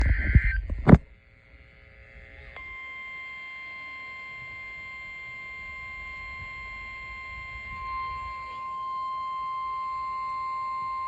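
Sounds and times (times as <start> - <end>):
high-pitched alarm tone: 2.6 - 11.0.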